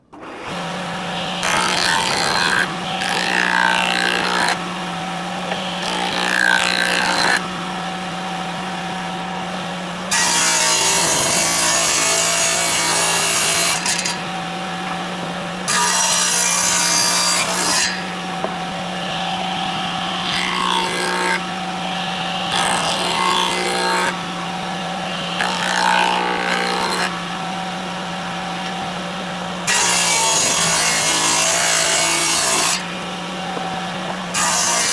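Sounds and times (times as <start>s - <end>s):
power tool motor hum: 0.1s - 34.9s
tool scraping wood: 10.1s - 18.7s.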